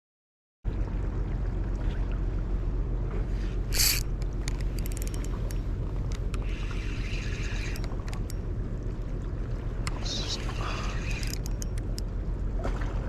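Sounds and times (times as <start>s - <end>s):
fishing reel whirring: 3.7s - 5.6s, 6.4s - 8.4s, 10.2s - 12.0s
fishing reel clicks: 3.7s - 8.4s, 10.6s - 12.0s.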